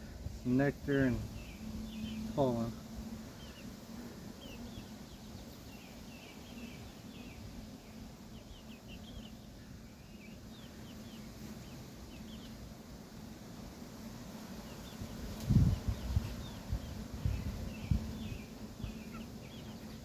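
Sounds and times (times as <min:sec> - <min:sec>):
bees buzzing: 0:00.0 - 0:20.0
small birds chirping: 0:00.0 - 0:20.0
wind rumbling on microphone: 0:15.1 - 0:19.1.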